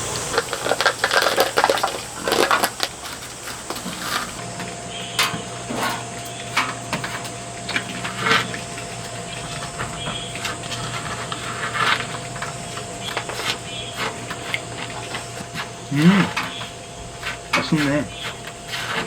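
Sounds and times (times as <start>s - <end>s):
steady hiss: 0.0s - 4.5s.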